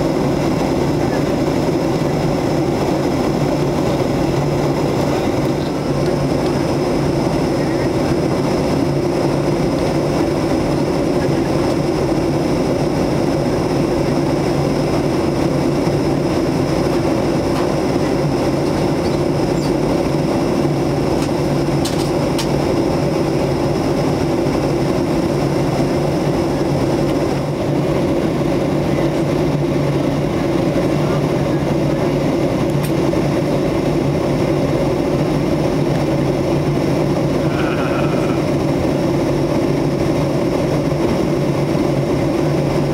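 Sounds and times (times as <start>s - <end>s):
jet cabin engine and airflow drone: 0.0s - 42.9s
thin high whine: 37.4s - 38.7s.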